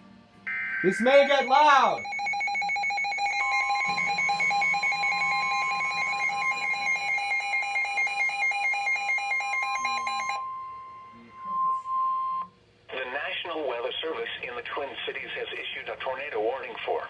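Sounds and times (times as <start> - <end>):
weather alert radio beeping: 0.5 - 12.4
steady warning alarm tone: 0.5 - 12.5.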